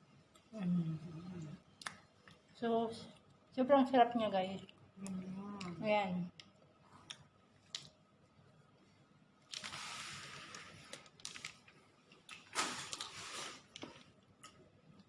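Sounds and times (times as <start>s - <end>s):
small eating clicks: 4.4s - 8.0s
food scraping and rustling: 12.5s - 14.1s.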